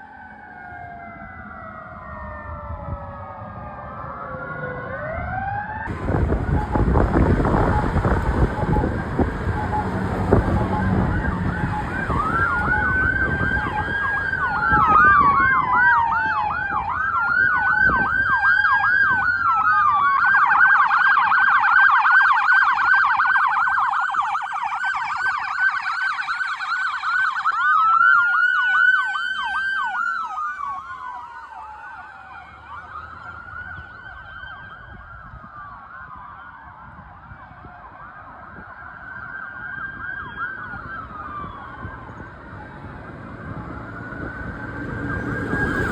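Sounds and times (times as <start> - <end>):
fire engine sirens wailing and yelping: 0.0 - 45.9
heavy vehicle engine rumble: 5.9 - 18.0, 40.2 - 45.9.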